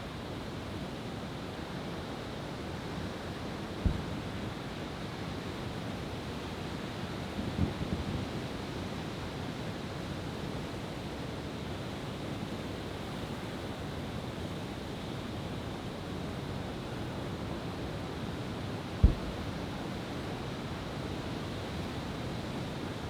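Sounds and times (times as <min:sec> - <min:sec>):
fireworks thumps: 0:19.0 - 0:19.4.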